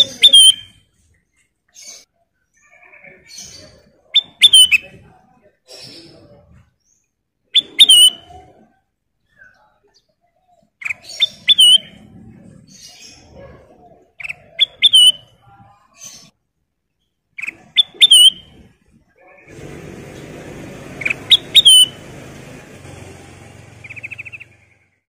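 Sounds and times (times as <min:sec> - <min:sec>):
bird whistling calls: 0:00.0 - 0:00.8, 0:03.6 - 0:04.9, 0:07.5 - 0:08.5, 0:10.8 - 0:12.0, 0:14.2 - 0:15.3, 0:17.4 - 0:18.6, 0:21.0 - 0:22.1, 0:23.8 - 0:24.8.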